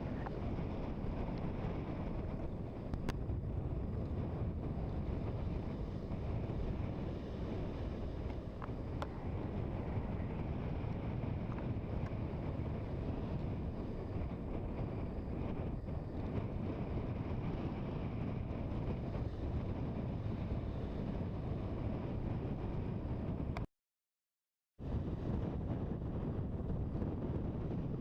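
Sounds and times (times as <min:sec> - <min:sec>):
wind buffeting microphone: 0:00.0 - 0:23.7, 0:24.8 - 0:28.0.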